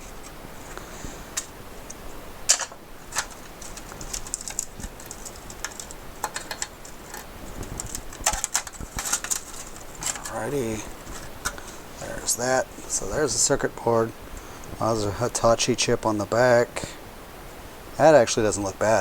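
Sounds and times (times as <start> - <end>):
hands clicking and tapping circuit board: 1.3 - 10.3.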